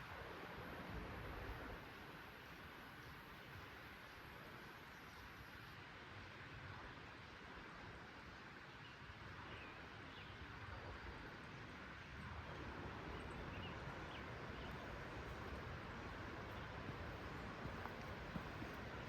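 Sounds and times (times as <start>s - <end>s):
creek water rushing: 5.8s - 19.0s.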